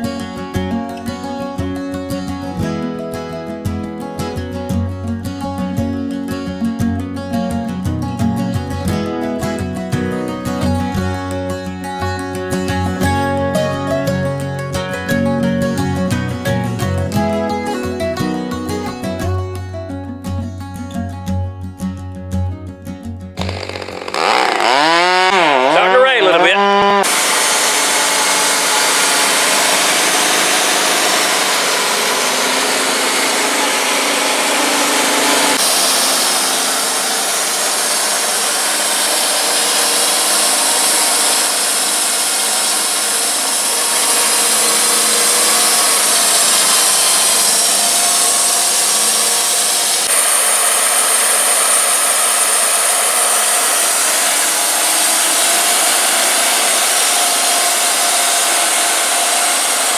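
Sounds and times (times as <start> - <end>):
band sawmill sawing wood: 23.4 - 59.9.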